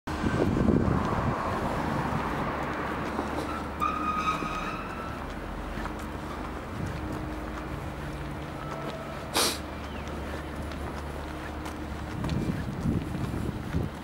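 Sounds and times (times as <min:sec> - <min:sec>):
air compressor diesel engine running: 0:04.8 - 0:14.0.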